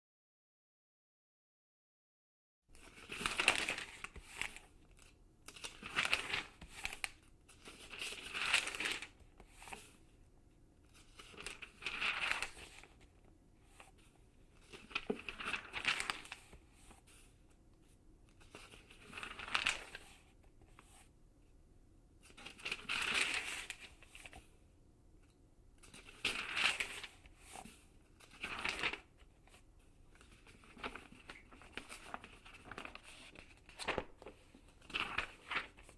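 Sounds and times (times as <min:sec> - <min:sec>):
magazine pages turning: 0:02.8 - 0:09.9, 0:10.9 - 0:13.1, 0:14.6 - 0:17.3, 0:18.4 - 0:20.2, 0:22.2 - 0:24.5, 0:25.8 - 0:35.9.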